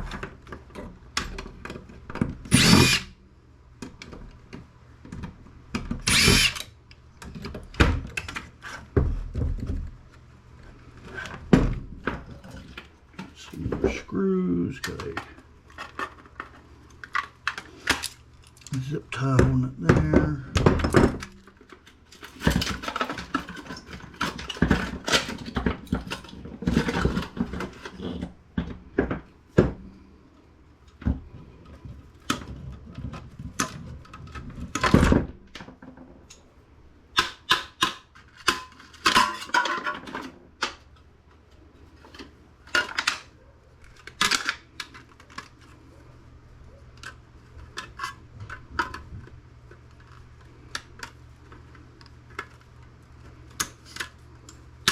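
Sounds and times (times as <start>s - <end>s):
metal computer parts clattering: 38.4s - 40.8s.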